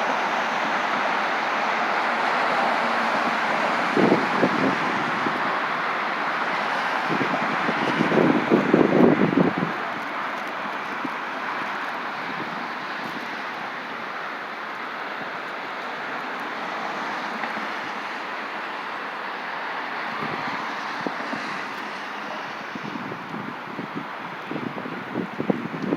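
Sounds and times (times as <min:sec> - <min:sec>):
wind gusts buffeting microphone: 0:00.0 - 0:14.1, 0:19.8 - 0:25.9
wind blowing: 0:00.0 - 0:14.4, 0:19.8 - 0:25.9.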